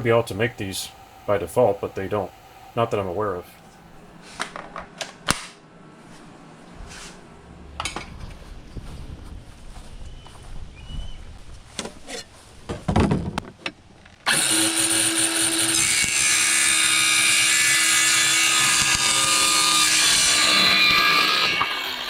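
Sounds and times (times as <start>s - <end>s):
power tool cutting wood: 14.3s - 22.0s.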